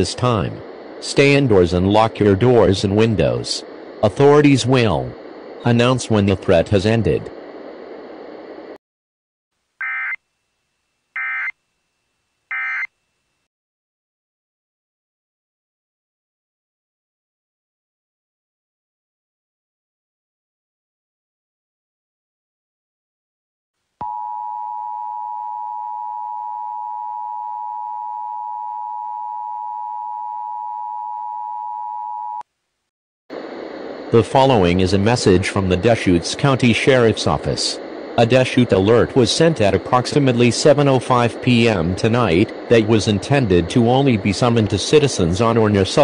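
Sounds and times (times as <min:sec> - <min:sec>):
digital data tone bursts: 0:11.2 - 0:11.6, 0:12.5 - 0:12.9.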